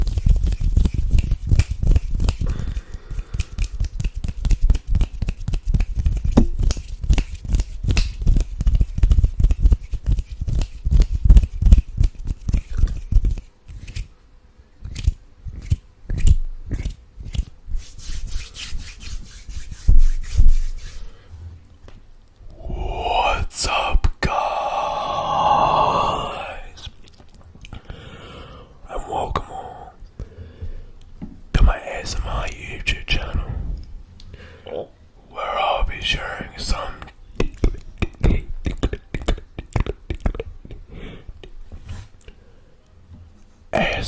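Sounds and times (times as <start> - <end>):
mouth clicks and smacks: 22.4 - 27.9, 35.9 - 41.6.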